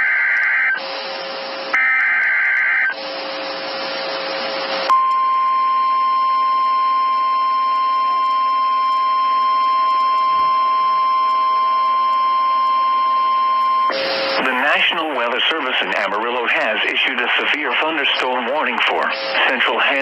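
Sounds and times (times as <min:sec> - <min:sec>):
loud steady alarm tone: 0:00.0 - 0:20.0
radio hiss: 0:13.9 - 0:20.0.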